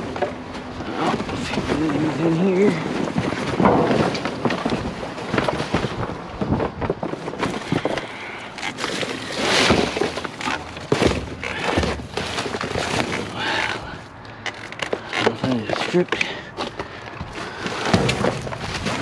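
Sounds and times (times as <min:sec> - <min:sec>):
scrap metal and wire clattering: 0:07.6 - 0:14.0.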